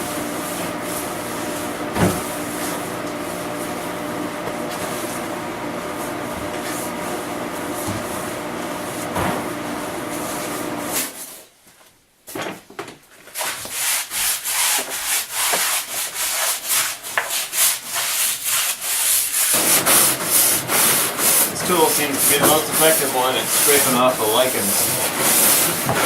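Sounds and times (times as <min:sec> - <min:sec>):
steady machine hum: 0:00.0 - 0:11.0, 0:19.6 - 0:26.0
hand tool scraping a surface: 0:13.4 - 0:26.0.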